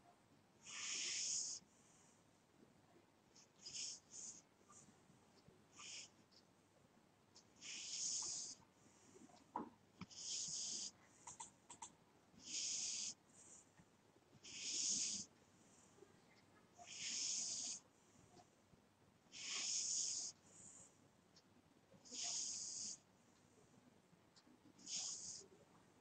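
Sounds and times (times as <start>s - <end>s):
cat snoring: 0.6s - 1.6s, 3.6s - 4.4s, 5.8s - 6.1s, 7.6s - 8.6s, 10.0s - 11.0s, 12.4s - 13.2s, 14.4s - 15.3s, 16.8s - 17.8s, 19.3s - 20.4s, 22.1s - 23.0s, 24.8s - 25.6s.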